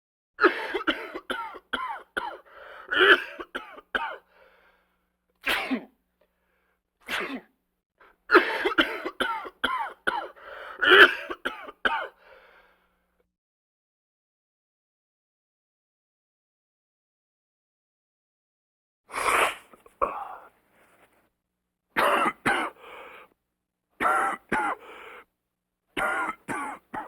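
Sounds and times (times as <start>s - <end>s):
person coughing: 0.4s - 4.2s, 5.4s - 5.9s, 7.1s - 7.5s, 8.3s - 12.2s, 19.2s - 20.5s, 22.0s - 22.8s, 24.0s - 25.0s, 26.0s - 27.0s.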